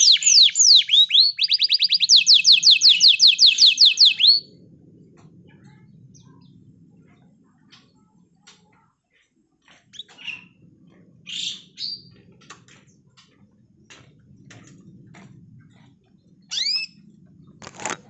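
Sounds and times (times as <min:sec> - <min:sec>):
canary chirps and calls: 0:00.0 - 0:04.5, 0:09.8 - 0:10.6, 0:11.2 - 0:12.2, 0:16.5 - 0:17.0
low background hum: 0:04.2 - 0:18.0.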